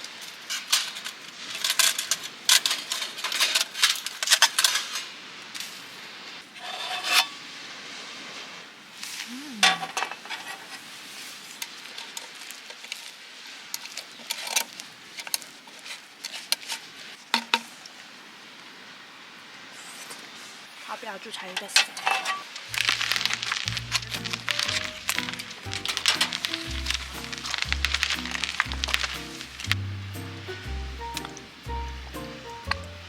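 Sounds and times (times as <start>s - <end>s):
steady soft hiss: 22.4s - 33.0s.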